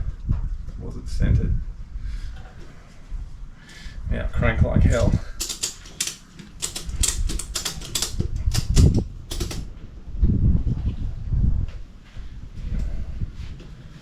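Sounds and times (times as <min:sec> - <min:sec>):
ratchet strap clicking: 0:05.4 - 0:09.7.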